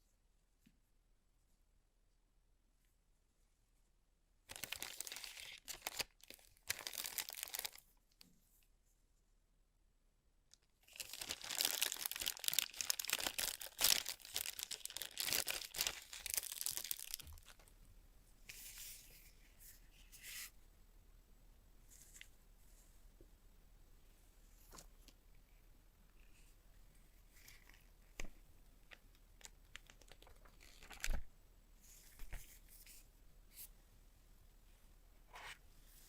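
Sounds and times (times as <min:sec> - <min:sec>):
packaging rustling and crinkling: 0:04.5 - 0:07.8, 0:10.9 - 0:17.7.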